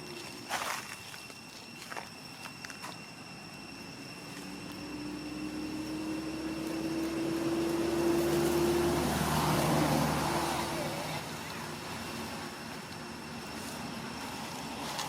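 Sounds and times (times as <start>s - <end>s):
motor engine approaching: 3.8s - 15.0s.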